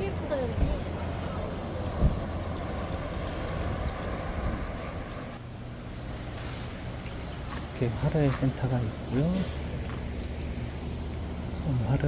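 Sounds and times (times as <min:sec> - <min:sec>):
low engine hum: 0:00.0 - 0:12.0
small bird chirping: 0:02.2 - 0:08.0.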